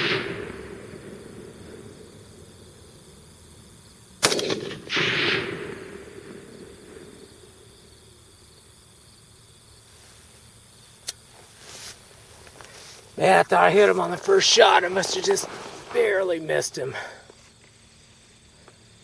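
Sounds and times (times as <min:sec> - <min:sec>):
rifle shot: 0:00.0 - 0:02.3, 0:04.2 - 0:07.2
burst of noise: 0:00.0 - 0:02.9.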